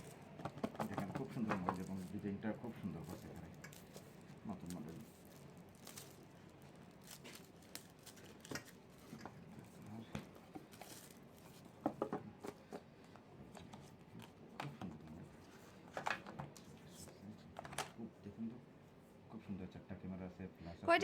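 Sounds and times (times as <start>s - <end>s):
rustling: 2.9s - 9.2s.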